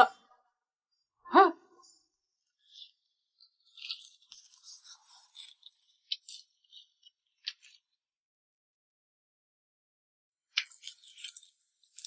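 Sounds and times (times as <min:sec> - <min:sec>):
crisp fried food crunching: 0:02.5 - 0:08.0, 0:10.5 - 0:12.0.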